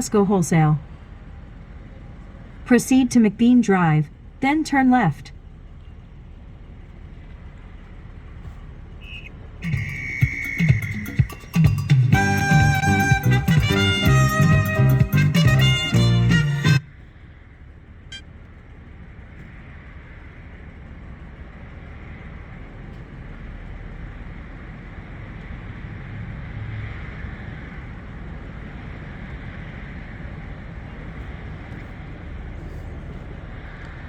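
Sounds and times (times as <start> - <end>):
car cabin road and engine noise: 0.0 - 34.0
music: 9.6 - 16.8.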